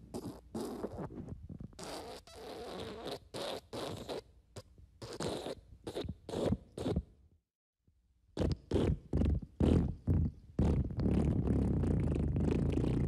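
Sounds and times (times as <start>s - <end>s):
fart sound effect: 8.4s - 13.0s.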